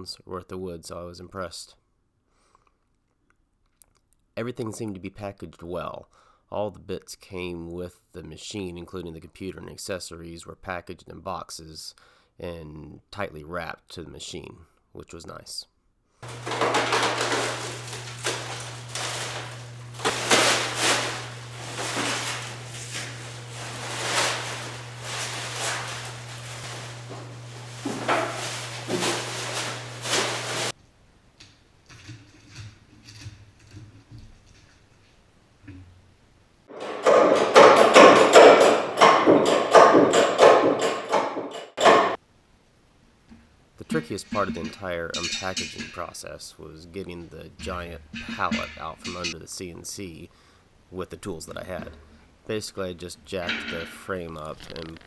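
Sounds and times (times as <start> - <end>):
low electrical hum: 3.0 - 40.9, 41.8 - 55.0
packing material rustling: 16.2 - 30.8, 53.6 - 55.0
rapid knocks: 36.7 - 42.2.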